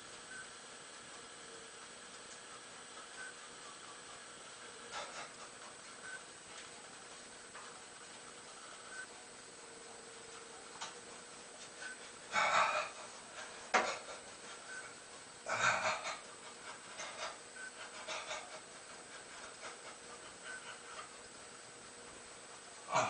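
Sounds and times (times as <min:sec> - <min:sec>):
man breathing heavily: 0:12.0 - 0:14.7, 0:15.5 - 0:21.2.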